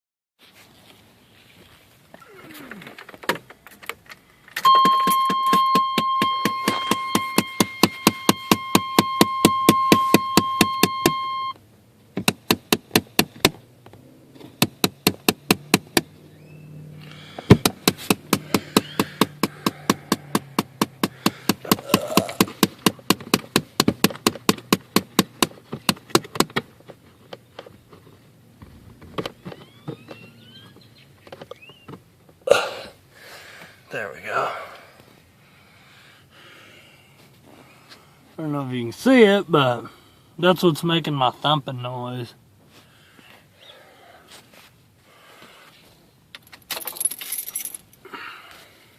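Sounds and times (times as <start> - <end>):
steady high tone: 4.6 - 11.6
car engine thumping: 4.6 - 32.4.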